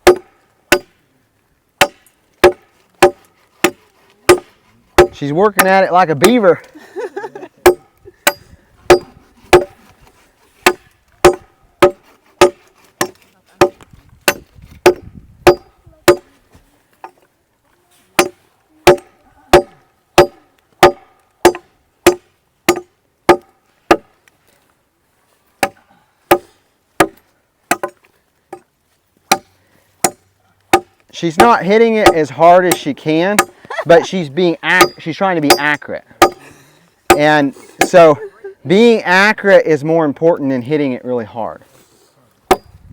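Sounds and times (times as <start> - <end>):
machete chopping into wood: 1.8 - 6.4, 7.7 - 9.8, 10.6 - 16.3, 18.2 - 24.1, 25.6 - 28.0, 29.3 - 33.6, 42.5 - 42.7.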